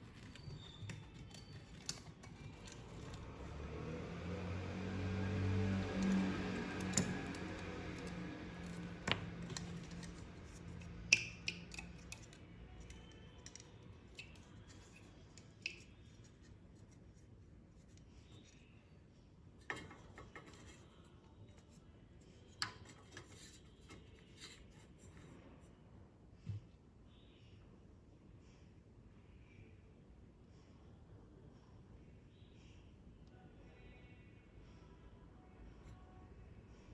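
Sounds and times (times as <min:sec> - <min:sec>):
rubbing and handling noise: 0:00.0 - 0:03.6, 0:05.7 - 0:18.8.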